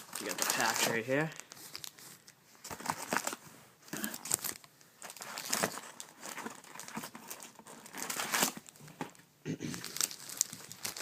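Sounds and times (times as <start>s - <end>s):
plastic pack tearing open: 0.0s - 2.0s, 4.0s - 8.8s, 9.8s - 11.0s
plastic wrappers crinkling: 0.0s - 3.4s, 4.0s - 8.9s, 9.7s - 11.0s.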